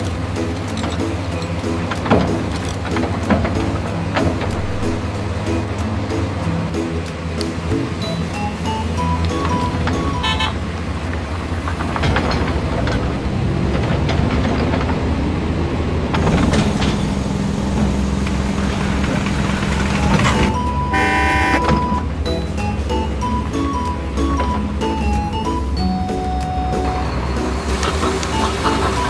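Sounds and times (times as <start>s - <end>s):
heavy vehicle engine rumbling: 0.0s - 29.0s
horn blast: 10.2s - 10.6s, 20.9s - 22.0s.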